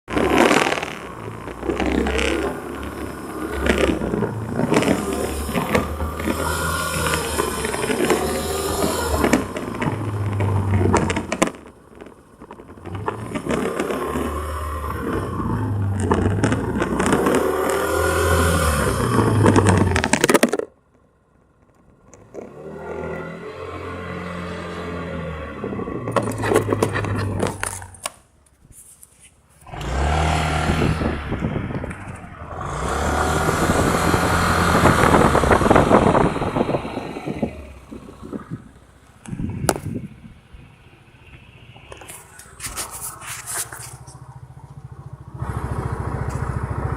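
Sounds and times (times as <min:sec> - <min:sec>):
low engine drone: 0:00.1 - 0:20.2, 0:22.4 - 0:28.1
scraping and clicking: 0:00.1 - 0:23.2, 0:25.6 - 0:30.0, 0:41.3 - 0:44.4.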